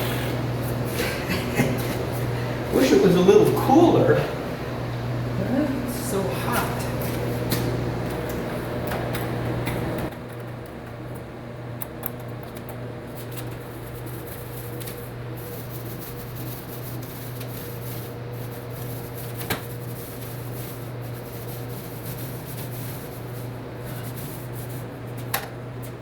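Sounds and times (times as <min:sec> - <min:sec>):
paint roller rubbing over wall: 0:00.0 - 0:04.2, 0:13.2 - 0:25.2
steady low hum: 0:00.0 - 0:26.0.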